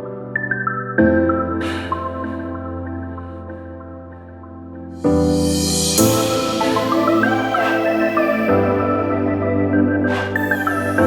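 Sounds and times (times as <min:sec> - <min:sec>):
soft synth intro music: 0:05.0 - 0:11.0.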